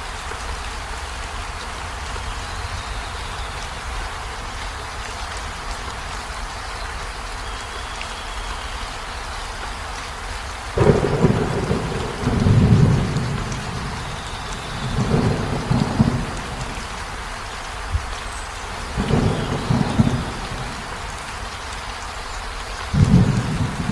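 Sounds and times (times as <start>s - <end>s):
steady rain falling: 0.0s - 23.9s
thunderclap and rolling thunder: 10.8s - 17.4s, 18.8s - 21.2s, 22.9s - 23.9s.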